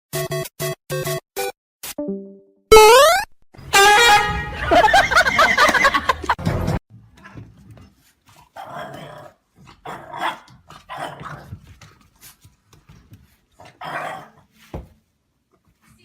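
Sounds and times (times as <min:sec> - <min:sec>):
dog barking and growling: 0:08.4 - 0:11.7, 0:13.6 - 0:14.5.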